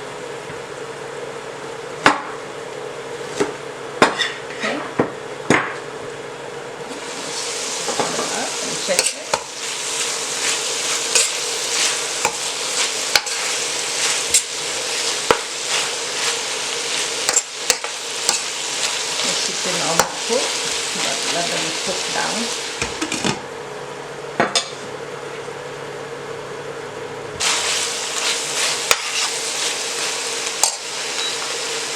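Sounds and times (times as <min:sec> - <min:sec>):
sauce sizzling in a pan: 0:06.9 - 0:22.9, 0:27.4 - 0:31.9.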